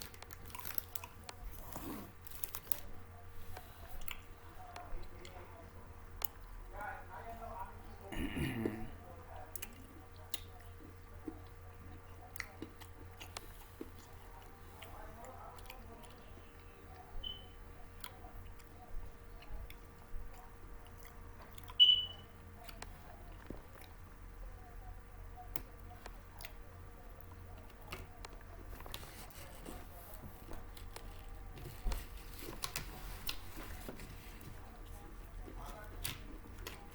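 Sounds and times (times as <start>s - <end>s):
person chewing crunchy snack: 0.0s - 2.8s
steady low hum: 0.0s - 36.9s.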